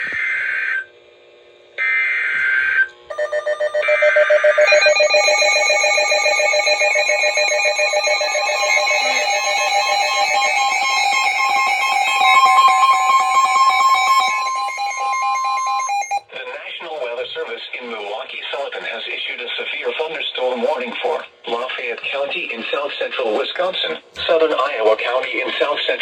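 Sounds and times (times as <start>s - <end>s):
rapid electronic pulsing alarm: 1.8s - 16.2s
screeching digital data bursts: 2.2s - 16.2s
steady warning tone: 2.4s - 16.2s.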